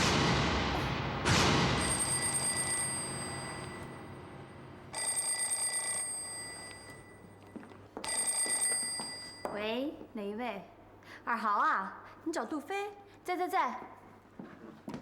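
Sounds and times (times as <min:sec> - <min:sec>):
telephone bell ringing: 0:01.8 - 0:04.2, 0:04.9 - 0:09.7.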